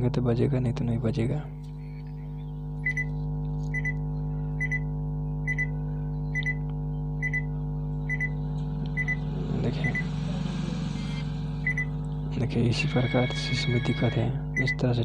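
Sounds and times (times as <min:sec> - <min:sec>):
steady low hum: 0:00.0 - 0:15.0
speaker double beeping: 0:08.1 - 0:10.2, 0:11.0 - 0:12.0, 0:14.5 - 0:14.9.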